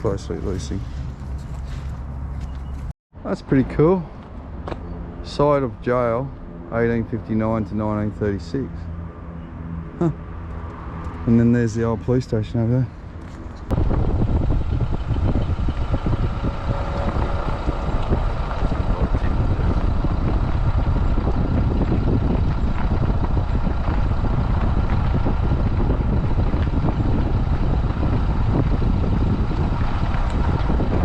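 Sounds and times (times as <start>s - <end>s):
vehicle road noise rumble: 0.0s - 31.0s
wind noise: 13.1s - 31.0s.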